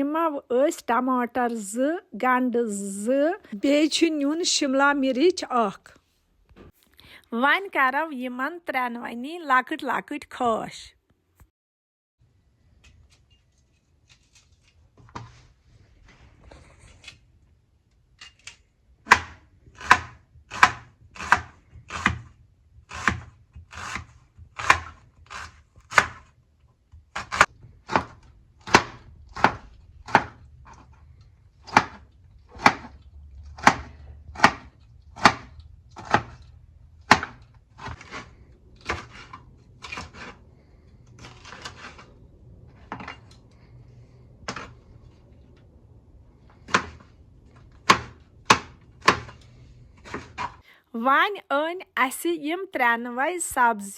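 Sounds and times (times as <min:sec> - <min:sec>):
knife chopping on cutting board: 0:19.1 - 0:22.3, 0:22.9 - 0:26.3, 0:27.2 - 0:30.8, 0:32.6 - 0:32.9, 0:33.6 - 0:36.4, 0:37.1 - 0:40.4, 0:47.8 - 0:49.4.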